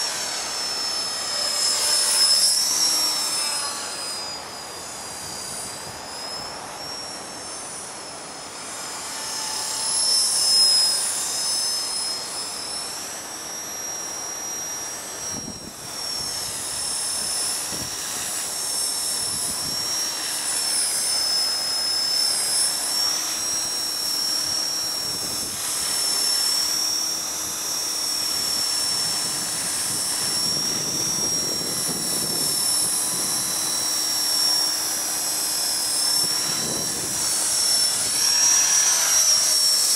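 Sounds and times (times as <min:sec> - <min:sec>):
rc helicopter whine: 0:00.0 - 0:39.9
wind gusts: 0:15.1 - 0:20.6, 0:27.3 - 0:39.9.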